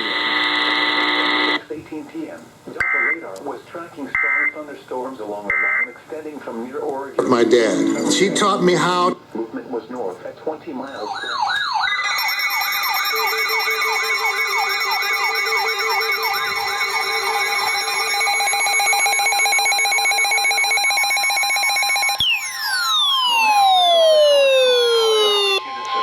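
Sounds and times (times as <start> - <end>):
steady held tones: 7.2 - 9.3, 11.0 - 26.0
tone sweeping down in pitch: 7.5 - 8.7, 11.0 - 20.6, 22.0 - 26.0
electronic siren warbling: 11.0 - 26.0.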